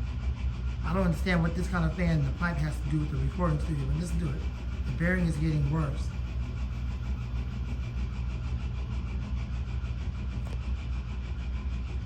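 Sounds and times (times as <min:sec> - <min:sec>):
exhaust fan humming: 0:00.0 - 0:12.0
fan bearings rattling: 0:00.0 - 0:12.0.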